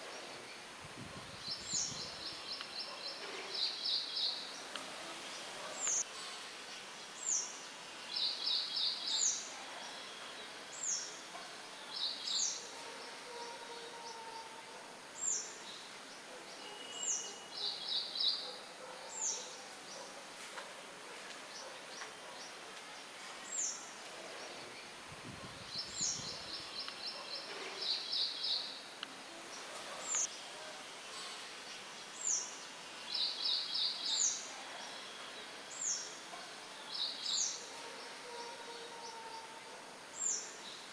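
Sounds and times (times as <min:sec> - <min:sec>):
wind rustling leaves: 0:00.0 - 0:12.7, 0:19.7 - 0:38.2
songbirds chirping and trilling: 0:00.0 - 0:20.5, 0:21.1 - 0:40.9.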